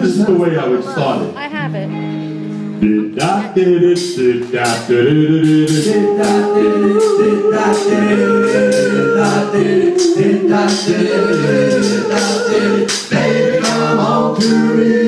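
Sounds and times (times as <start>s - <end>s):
vocal group singing in harmony: 2.8s - 15.0s
sharp percussive hits: 3.2s - 15.0s.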